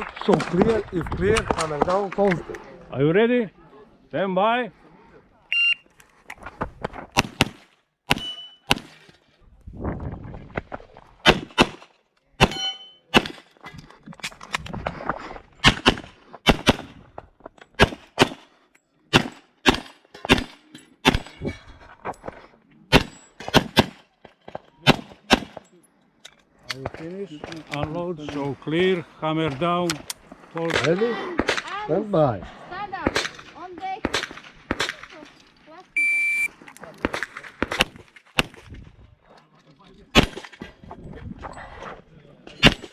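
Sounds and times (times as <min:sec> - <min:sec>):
pistol shots: 0:07.1 - 0:09.0, 0:11.2 - 0:13.4, 0:22.9 - 0:24.0, 0:33.0 - 0:35.1, 0:40.1 - 0:40.5.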